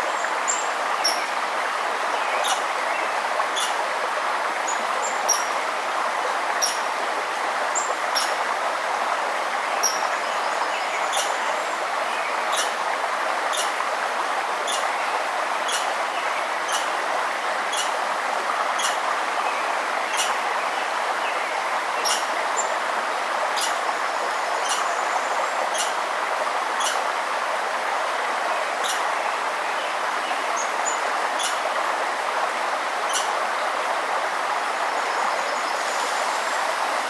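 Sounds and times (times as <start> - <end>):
river water rushing: 0.0 - 37.0
birds chirping: 2.2 - 3.8, 6.6 - 6.9, 9.8 - 12.8, 13.5 - 13.8, 14.6 - 16.9, 17.7 - 18.1, 18.8 - 19.0, 20.1 - 21.4, 23.6 - 26.0, 28.8 - 29.2, 29.8 - 31.7.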